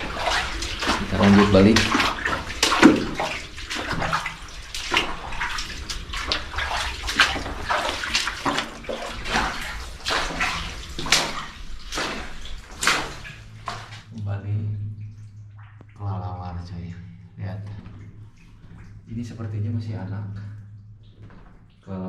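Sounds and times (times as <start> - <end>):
footsteps splashing through water: 0.0 - 14.2.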